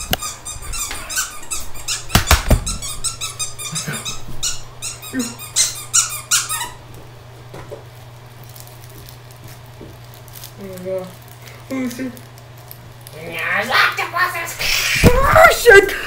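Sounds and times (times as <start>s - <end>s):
dog toy squeaking: 0.0s - 6.8s.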